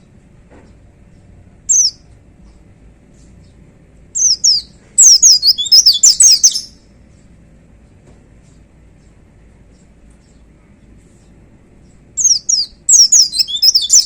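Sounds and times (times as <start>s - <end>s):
bird singing high notes: 4.2s - 6.8s, 12.2s - 14.0s.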